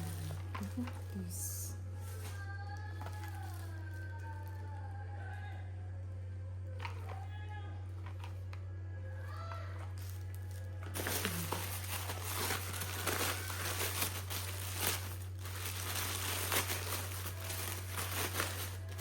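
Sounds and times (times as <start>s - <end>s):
plastic packaging crinkling: 0.0s - 4.7s, 9.8s - 19.0s.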